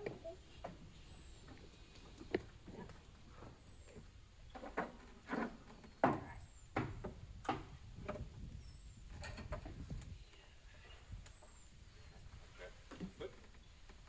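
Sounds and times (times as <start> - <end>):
irregular knocks and clicks: 4.5 - 8.2.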